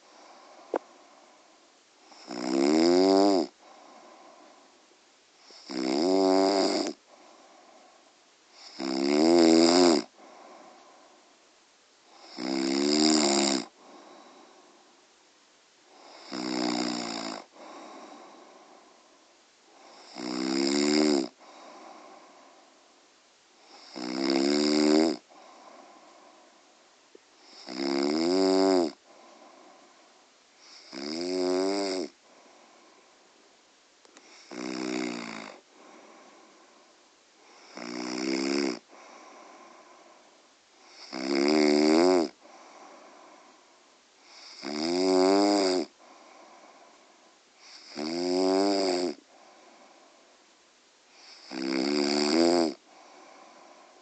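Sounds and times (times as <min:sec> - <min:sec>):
soft breathing: 0:00.0 - 0:02.1, 0:03.6 - 0:05.6, 0:07.0 - 0:08.6, 0:10.1 - 0:12.2, 0:13.7 - 0:16.0, 0:17.5 - 0:20.0, 0:21.3 - 0:23.7, 0:25.2 - 0:27.4, 0:28.9 - 0:30.9, 0:32.1 - 0:34.5, 0:35.6 - 0:37.8, 0:38.8 - 0:40.9, 0:42.3 - 0:44.5, 0:45.9 - 0:47.8, 0:49.2 - 0:51.4, 0:52.8 - 0:54.0
woman snoring: 0:02.1 - 0:04.2, 0:05.4 - 0:07.0, 0:08.6 - 0:10.8, 0:12.1 - 0:14.6, 0:15.9 - 0:18.8, 0:19.7 - 0:22.4, 0:23.6 - 0:26.2, 0:27.4 - 0:29.6, 0:30.6 - 0:32.2, 0:34.2 - 0:36.4, 0:37.4 - 0:40.0, 0:40.8 - 0:43.3, 0:44.2 - 0:46.9, 0:47.6 - 0:49.9, 0:51.2 - 0:54.0.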